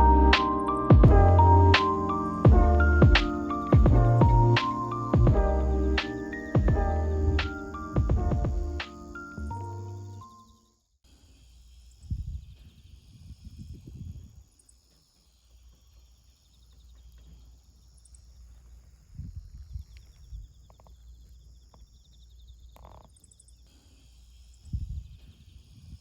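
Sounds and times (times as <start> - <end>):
low rumbles: 0.0 - 6.0.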